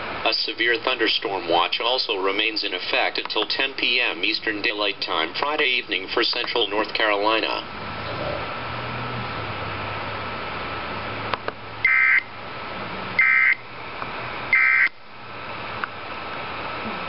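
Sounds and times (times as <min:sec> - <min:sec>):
radio hiss: 0:00.0 - 0:07.7.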